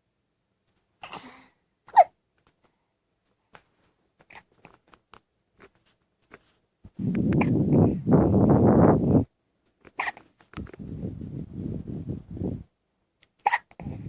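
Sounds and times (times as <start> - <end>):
loud sharp hiccup: 1.0 - 2.1, 7.4 - 7.6, 10.0 - 10.3, 13.4 - 14.0.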